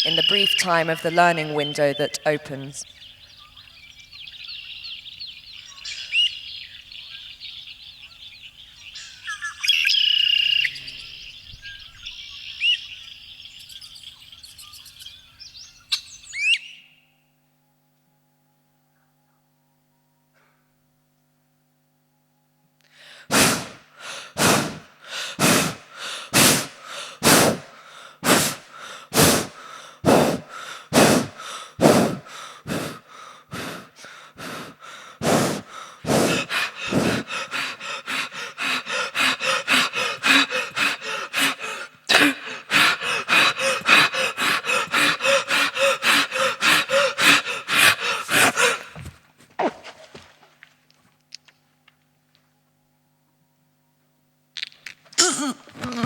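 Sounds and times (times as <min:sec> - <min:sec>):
person gasping and panting: 0:23.0 - 0:49.2, 0:55.2 - 0:56.0.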